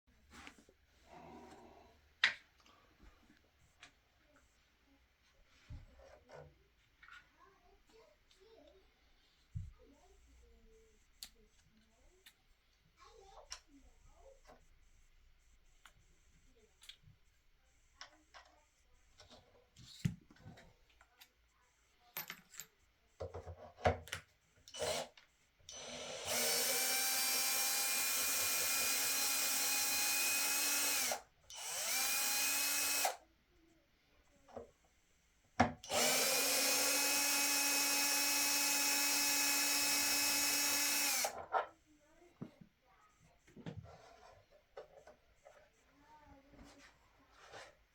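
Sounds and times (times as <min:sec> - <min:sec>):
electric drill-driver whining: 0:24.7 - 0:33.2, 0:35.8 - 0:41.4.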